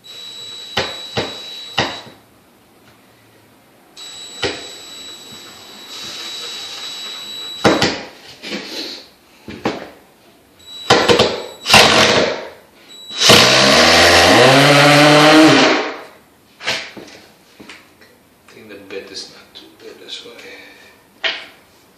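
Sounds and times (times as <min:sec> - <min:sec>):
impact driver driving a screw: 0:10.9 - 0:12.4, 0:13.2 - 0:15.9.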